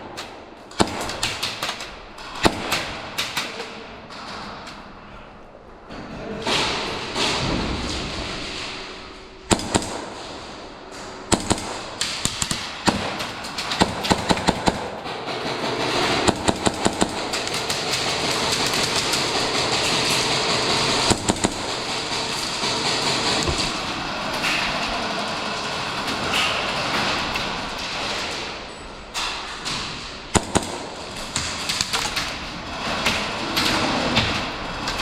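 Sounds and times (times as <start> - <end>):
airsoft guns firing: 0.0 - 4.4, 9.5 - 24.8, 30.3 - 32.4.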